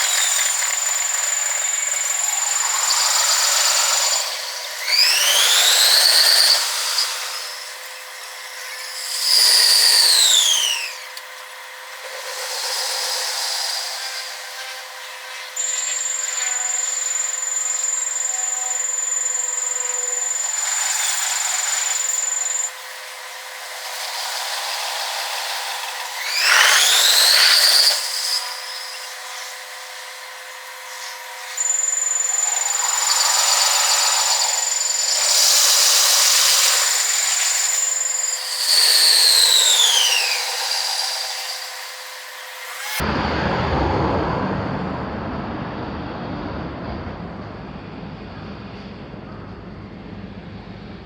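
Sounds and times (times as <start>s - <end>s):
train whine: 26.1s - 39.1s, 42.2s - 51.0s
train rolling noise: 43.0s - 51.0s.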